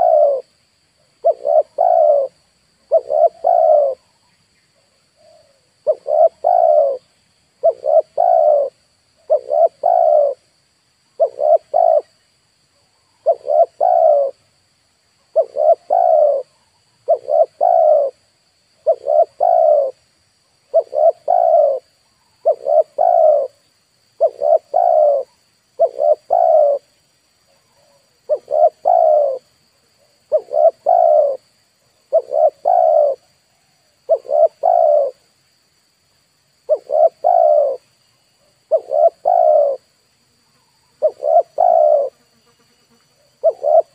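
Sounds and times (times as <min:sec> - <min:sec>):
dove cooing: 0:00.0 - 0:00.5, 0:01.2 - 0:04.2, 0:05.2 - 0:10.5, 0:11.2 - 0:12.1, 0:13.2 - 0:14.4, 0:15.3 - 0:18.2, 0:18.8 - 0:20.0, 0:20.7 - 0:23.6, 0:24.2 - 0:26.9, 0:27.5 - 0:35.2, 0:36.6 - 0:39.9, 0:40.9 - 0:42.2, 0:43.2 - 0:43.9.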